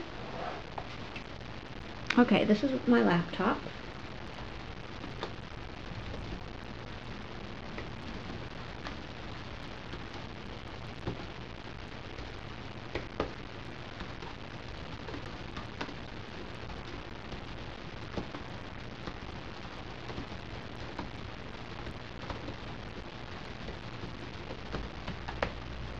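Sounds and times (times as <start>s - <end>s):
laptop keyboard typing: 5.0s - 5.4s, 7.6s - 11.4s, 12.1s - 25.9s.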